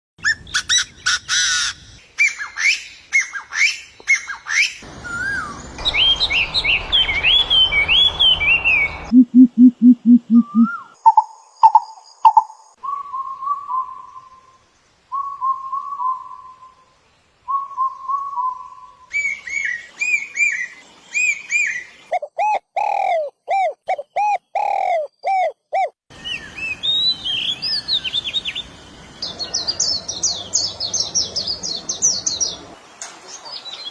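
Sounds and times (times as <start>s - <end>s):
birds chirping and whistling: 0.4s - 9.1s, 17.5s - 32.6s.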